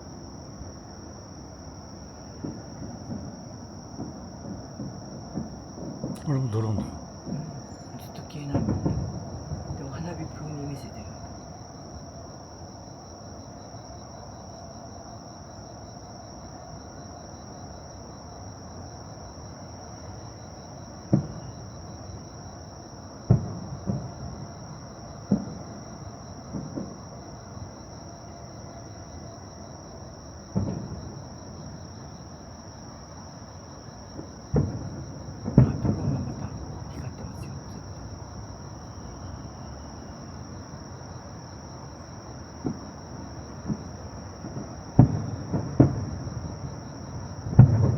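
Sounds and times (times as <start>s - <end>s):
insects chirring: 0.0s - 47.9s
distant fireworks booming: 2.3s - 11.9s, 20.9s - 22.1s, 23.3s - 27.6s, 30.5s - 32.0s, 34.0s - 40.8s, 41.8s - 47.9s.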